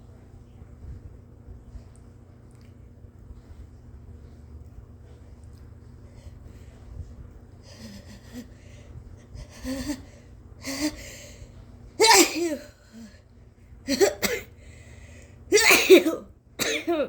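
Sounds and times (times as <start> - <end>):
voiced catching breaths: 7.6 - 11.6, 14.6 - 15.4
woman sneezing: 12.0 - 12.8, 13.9 - 14.5, 15.5 - 17.0.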